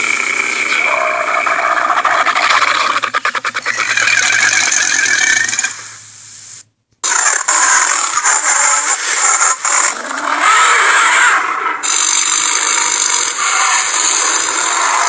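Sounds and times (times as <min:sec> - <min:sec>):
dinosaur roar: 0:00.0 - 0:04.9, 0:07.1 - 0:15.0
rasping animal call: 0:07.0 - 0:15.0.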